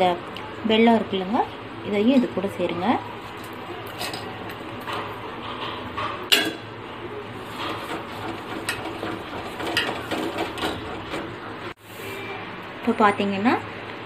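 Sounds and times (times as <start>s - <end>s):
ladle stirring in a pot: 3.1s - 11.8s
ladle clinking against pot: 4.0s - 6.7s, 7.4s - 11.4s.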